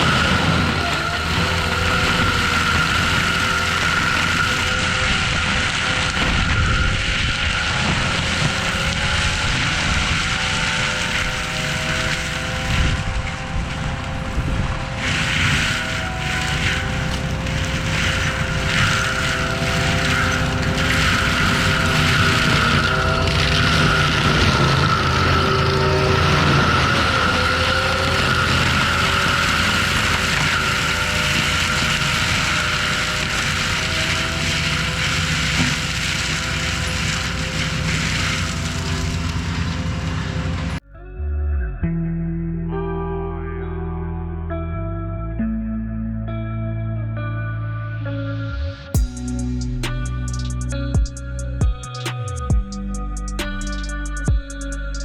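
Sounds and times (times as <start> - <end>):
loader engine drone: 0.0 - 42.0, 47.3 - 55.0
mulcher whine: 0.0 - 55.0.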